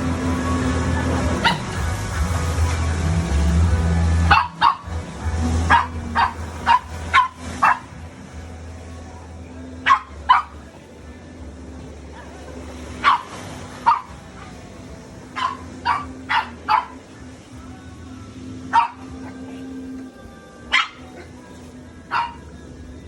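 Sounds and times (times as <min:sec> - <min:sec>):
steady low hum: 0:00.0 - 0:23.0
dog barking: 0:01.4 - 0:01.8, 0:04.3 - 0:04.9, 0:05.7 - 0:07.9, 0:09.8 - 0:10.6, 0:12.2 - 0:14.6, 0:15.3 - 0:17.0, 0:18.7 - 0:19.6, 0:20.7 - 0:21.4, 0:22.1 - 0:22.5.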